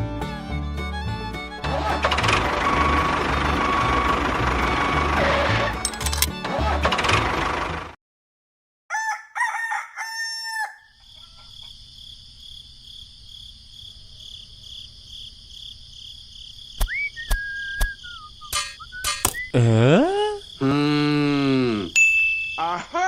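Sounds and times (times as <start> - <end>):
rooster crowing: 8.9 - 11.6
short falling whistle: 16.8 - 19.6
high chirring: 18.5 - 19.6.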